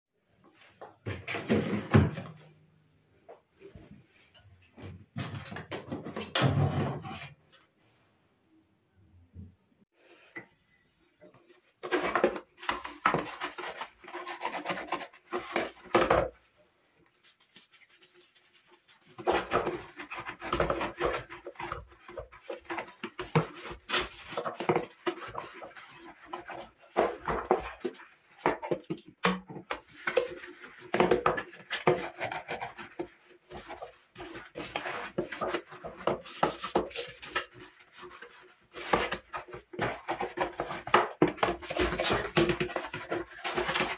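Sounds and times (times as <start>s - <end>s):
hand scrubbing a hard surface: 17.1s - 28.5s.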